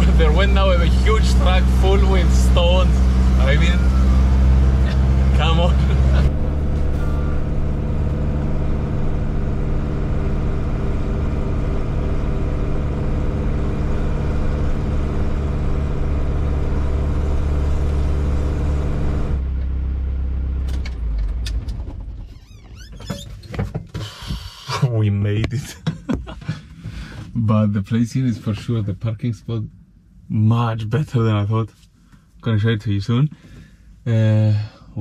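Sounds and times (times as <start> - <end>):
diesel engine pulling under load: 0.0 - 22.4.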